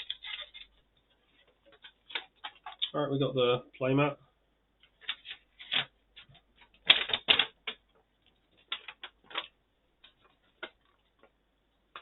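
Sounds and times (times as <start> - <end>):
stiff paper crackling and rustling: 0.0 - 2.9, 5.0 - 11.3.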